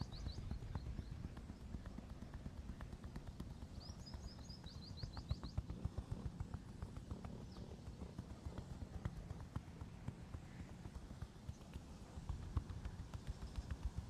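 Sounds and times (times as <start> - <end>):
hands tapping and patting: 0.4 - 3.9.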